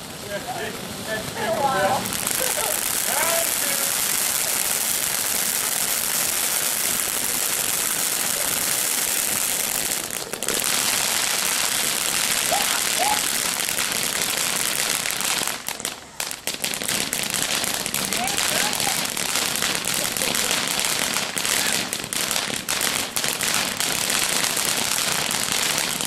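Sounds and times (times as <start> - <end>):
fireworks fountain hissing crackle: 0.0 - 26.0.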